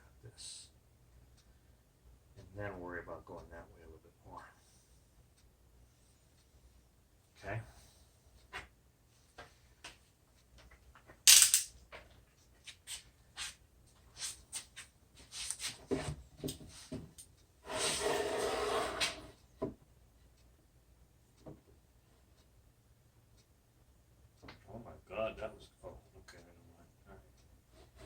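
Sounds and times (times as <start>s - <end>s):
tools and wood clicking and knocking: 9.8s - 12.2s.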